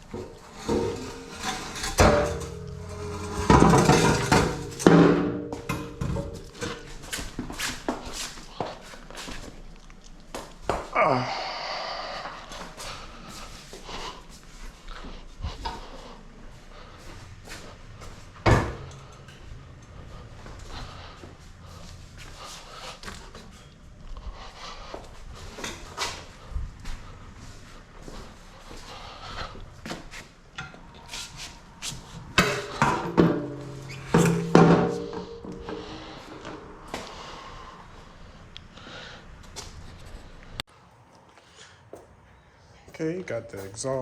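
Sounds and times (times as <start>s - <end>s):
metallic clunks: 0.0s - 7.4s
exhaust pipe clanking: 0.0s - 8.0s, 28.1s - 37.5s
loud metal knocks: 0.2s - 7.1s.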